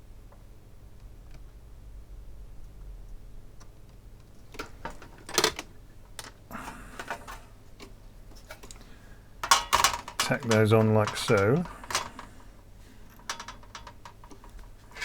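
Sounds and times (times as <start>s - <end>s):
small tools clicking and tapping: 9.4s - 15.0s.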